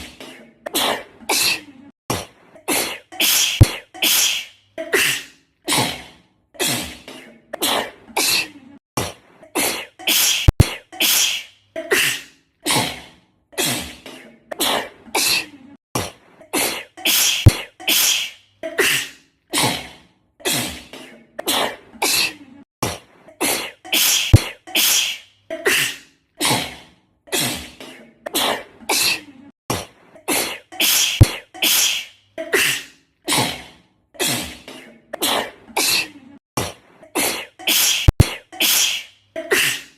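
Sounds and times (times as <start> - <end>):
girl sneezing: 2.7 - 5.9, 9.6 - 12.9, 16.5 - 19.7, 23.4 - 26.6, 30.3 - 33.5, 37.2 - 39.9.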